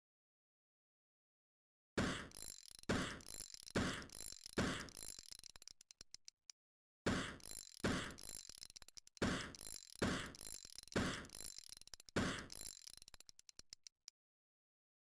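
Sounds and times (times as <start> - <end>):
hand tool ratcheting clicks: 2.3 - 14.1.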